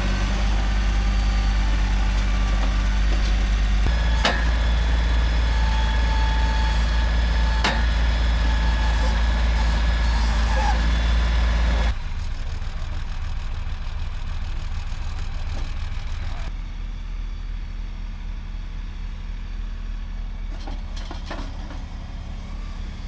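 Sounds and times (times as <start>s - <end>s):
engine idling: 0.0s - 16.8s.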